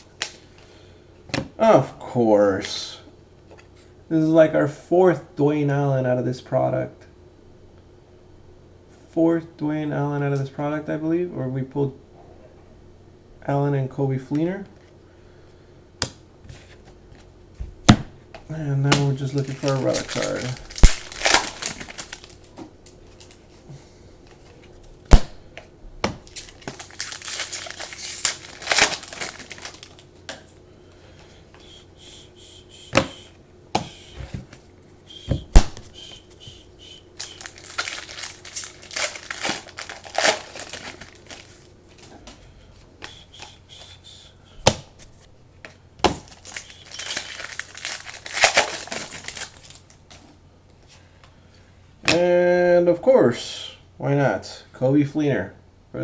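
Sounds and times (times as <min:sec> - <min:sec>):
foil wrappers crinkling and tearing: 0:19.2 - 0:23.6, 0:26.3 - 0:30.1, 0:37.2 - 0:42.1, 0:46.2 - 0:50.2.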